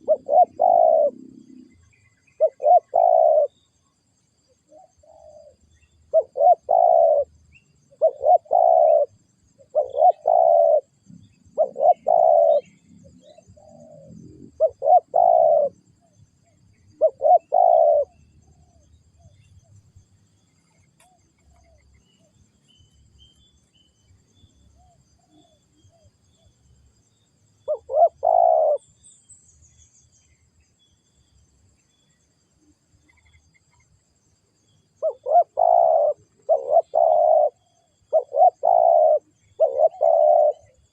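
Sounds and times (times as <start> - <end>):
dove cooing: 0.0 - 3.7, 4.7 - 19.4, 27.6 - 28.9, 35.0 - 40.9.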